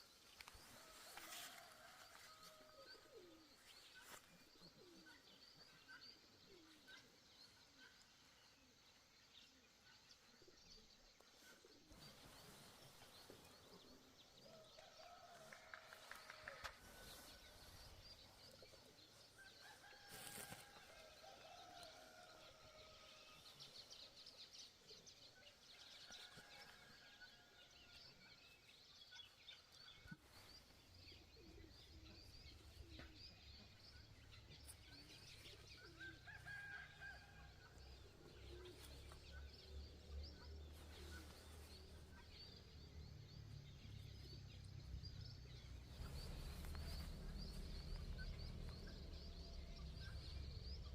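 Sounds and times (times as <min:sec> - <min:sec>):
small birds chirping: 0:22.1 - 0:50.9
low rumble: 0:44.7 - 0:50.9.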